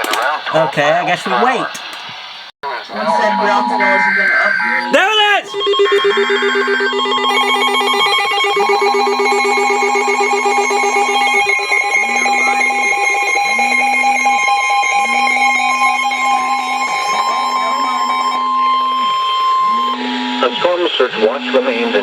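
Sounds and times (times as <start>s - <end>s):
pulsing buzz: 2.7s - 22.0s
two-tone alarm: 2.7s - 22.0s.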